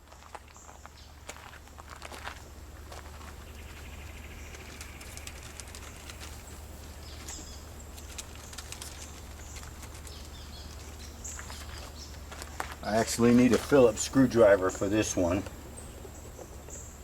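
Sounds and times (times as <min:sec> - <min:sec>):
steady low hum: 0:00.0 - 0:17.0
faint clicks: 0:04.4 - 0:06.6.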